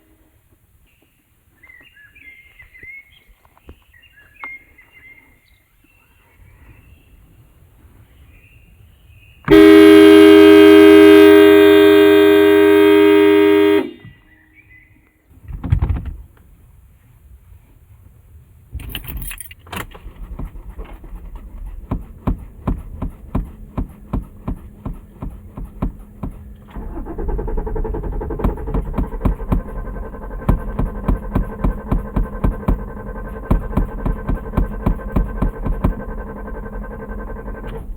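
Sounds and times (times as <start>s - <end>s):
car horn honk: 9.5s - 14.2s.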